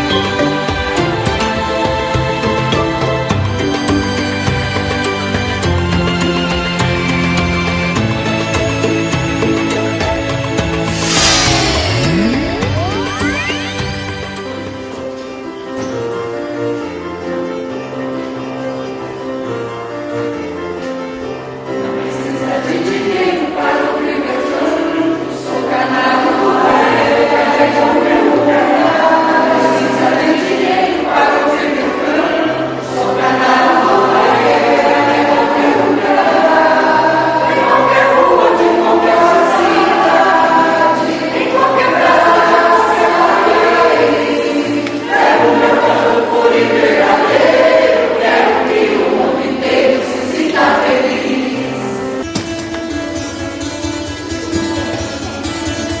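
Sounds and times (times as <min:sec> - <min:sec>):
instrumental backing with bass line: 0:10.2 - 0:14.8
choir singing: 0:10.6 - 0:14.6, 0:21.6 - 0:52.2.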